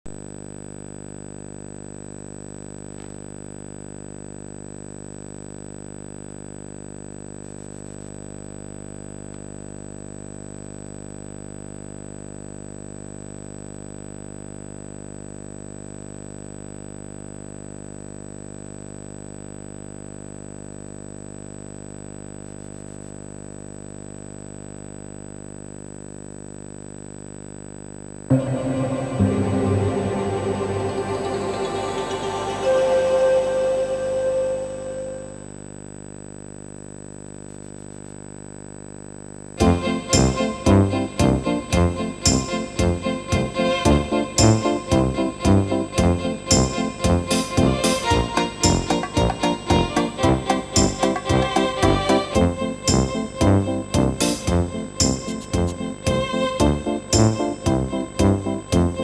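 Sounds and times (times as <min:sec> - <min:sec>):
high-pitched whine: 0:28.3 - 0:35.9.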